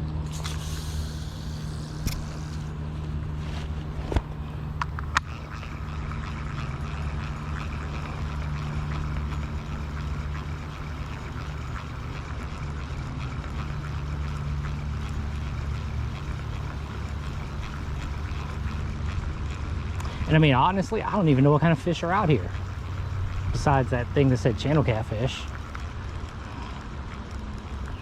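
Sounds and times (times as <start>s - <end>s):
sharp clicks: 0.0s - 2.7s
low engine drone: 0.0s - 28.0s.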